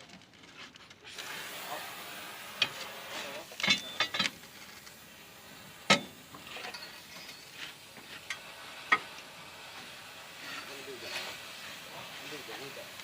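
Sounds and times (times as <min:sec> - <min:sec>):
metal tools clinking: 0:03.6 - 0:04.4, 0:05.9 - 0:07.7.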